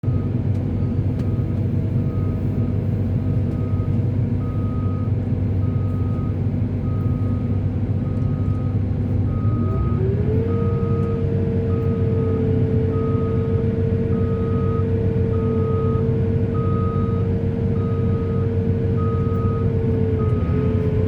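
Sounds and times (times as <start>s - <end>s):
diesel engine whining and rumbling: 0.0s - 21.0s
reversing alarm beeping: 3.5s - 13.5s, 14.2s - 20.8s.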